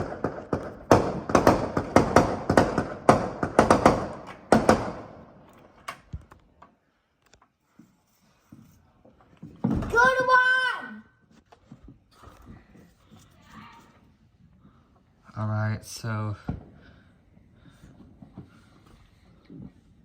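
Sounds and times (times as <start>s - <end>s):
fireworks bangs and pops: 0.0s - 6.2s.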